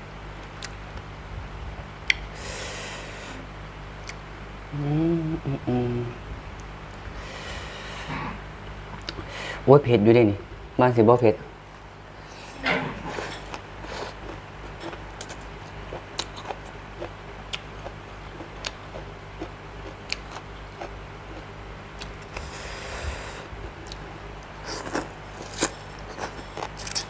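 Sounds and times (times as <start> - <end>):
breathy hiss: 2.3 - 3.5, 7.1 - 8.5, 9.2 - 9.7, 22.3 - 23.5
person chewing food: 13.1 - 22.5, 23.8 - 27.0.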